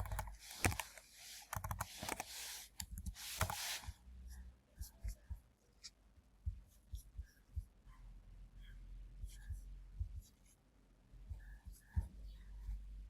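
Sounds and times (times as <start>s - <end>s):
mouse clicks: 0.0s - 3.6s
keyboard typing: 0.0s - 3.7s.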